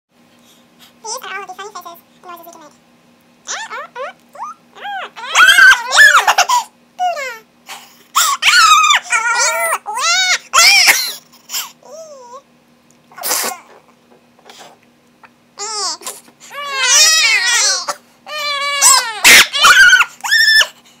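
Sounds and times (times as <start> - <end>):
person making squeaky squeals: 3.5 - 6.6, 8.2 - 12.4, 15.6 - 20.8.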